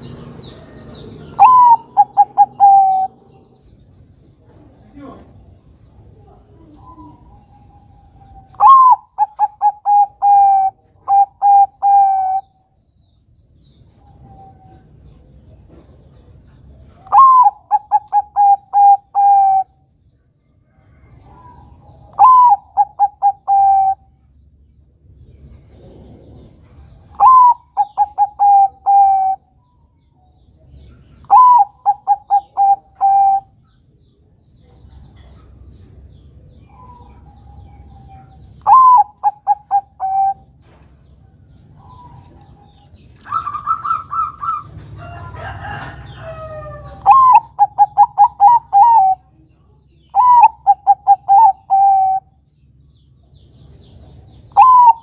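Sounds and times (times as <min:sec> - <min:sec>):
dove cooing: 0:00.0 - 0:03.8, 0:06.1 - 0:12.6, 0:17.0 - 0:19.8, 0:21.0 - 0:24.1, 0:25.7 - 0:29.5, 0:31.1 - 0:33.6, 0:36.7 - 0:40.7, 0:41.7 - 0:49.4, 0:50.1 - 0:52.3, 0:54.5 - 0:55.0.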